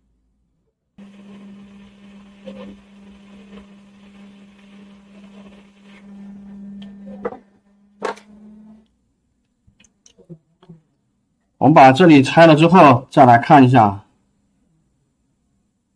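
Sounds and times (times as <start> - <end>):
hot-air rework station humming: 1.0 - 8.9.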